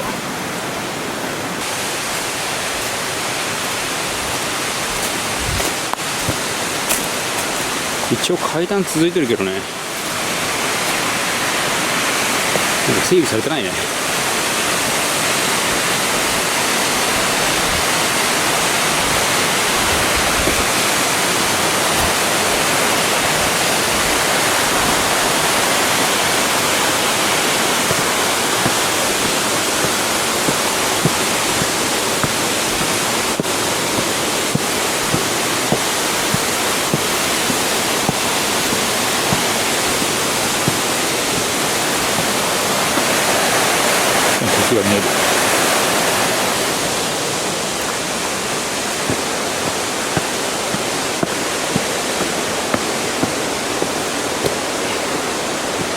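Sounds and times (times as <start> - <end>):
waterfall rushing hiss: 0.0 - 55.9.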